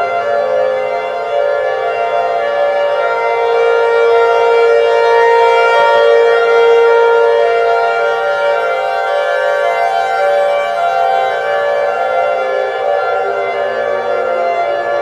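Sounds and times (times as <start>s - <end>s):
warning sirens wailing: 0.0s - 15.0s.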